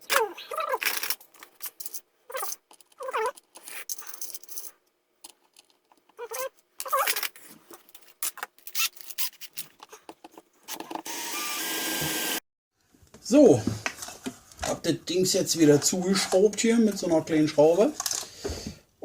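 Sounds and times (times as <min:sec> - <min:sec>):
plastic parts clicking and rattling: 0:00.0 - 0:11.1, 0:18.0 - 0:18.3.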